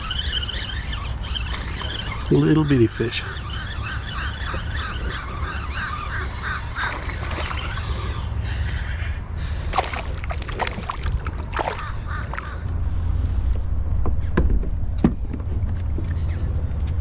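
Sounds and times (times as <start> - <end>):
water sloshing around a kayak: 1.2 - 2.4, 6.4 - 8.2, 9.7 - 12.7
steady low rumble: 3.8 - 17.0.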